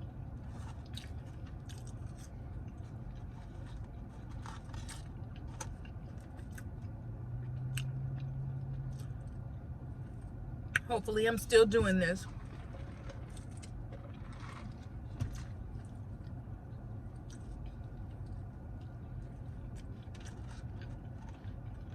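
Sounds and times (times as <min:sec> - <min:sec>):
steady low hum: 0:00.0 - 0:21.9
person chewing and biting food: 0:00.4 - 0:09.4, 0:15.4 - 0:21.9.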